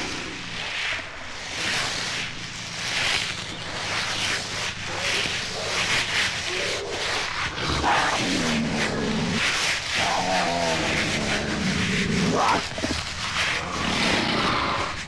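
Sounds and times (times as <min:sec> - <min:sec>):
harsh noisy monster bursts: 0:06.5 - 0:15.0.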